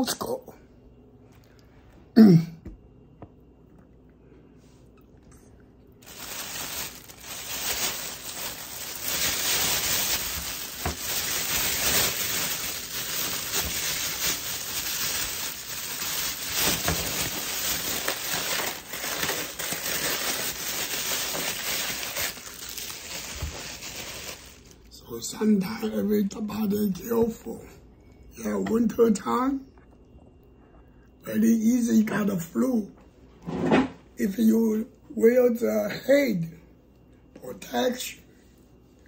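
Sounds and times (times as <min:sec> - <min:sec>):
packaging crinkling and rustling: 0:06.0 - 0:25.0.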